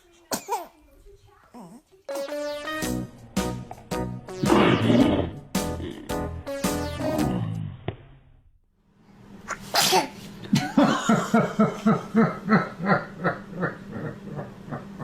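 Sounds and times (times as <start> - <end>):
person laughing: 10.5 - 15.0.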